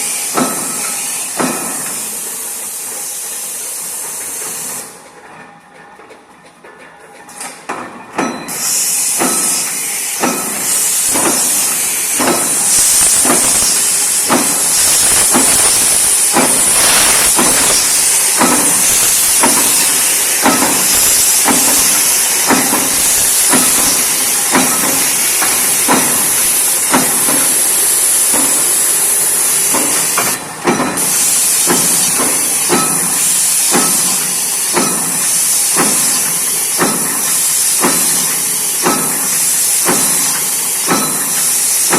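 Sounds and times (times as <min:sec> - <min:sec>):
punch press punching metal: 0:07.7 - 0:41.9
loud steady hiss: 0:08.5 - 0:41.9.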